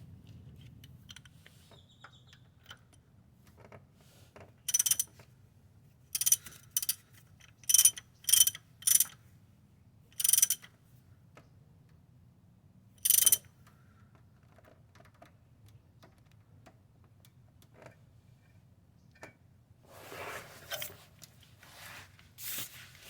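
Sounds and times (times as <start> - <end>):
mechanical ratcheting clatter: 4.7 - 5.1, 6.1 - 9.2, 10.2 - 10.7, 13.0 - 13.5.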